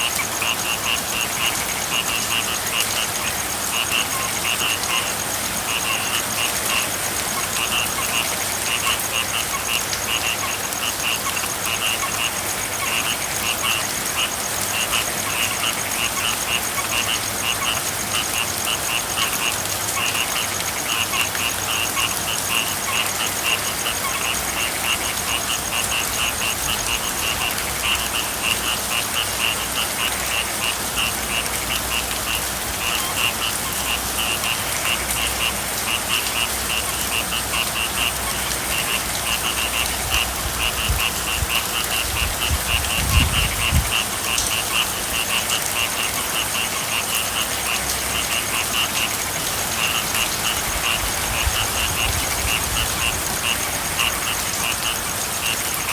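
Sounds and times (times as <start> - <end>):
frogs calling: 0.0 - 55.9
hiss of falling rain: 0.0 - 55.9.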